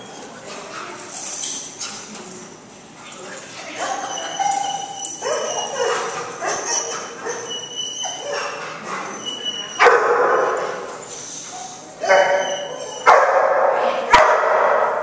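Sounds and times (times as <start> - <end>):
dog barking: 9.8 - 10.6, 12.0 - 15.0.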